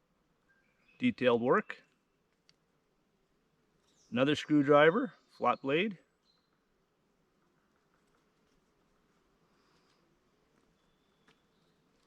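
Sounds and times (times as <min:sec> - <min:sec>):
faint click: 0:01.9 - 0:02.7.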